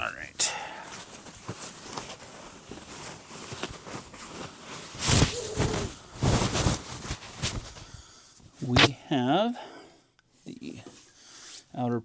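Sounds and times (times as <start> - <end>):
rustling: 0.8 - 8.9.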